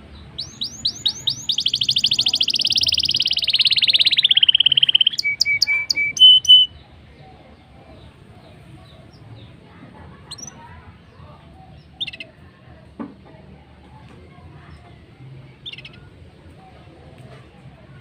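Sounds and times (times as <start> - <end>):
bird whistled song: 0.4 - 6.8, 15.6 - 16.0
faint bird chirps: 0.4 - 6.8.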